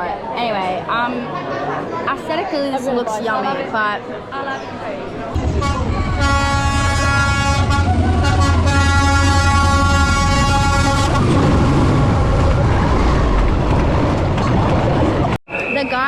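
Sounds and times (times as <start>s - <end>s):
train horn blasts: 5.4s - 12.2s
diesel train rumbling past: 5.4s - 15.4s.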